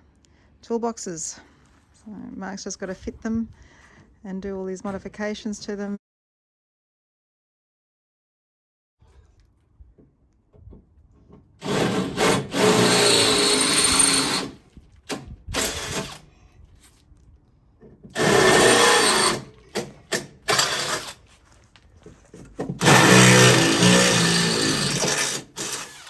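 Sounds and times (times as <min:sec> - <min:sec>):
power drill running: 0:11.6 - 0:16.3, 0:18.1 - 0:21.2, 0:22.8 - 0:26.0.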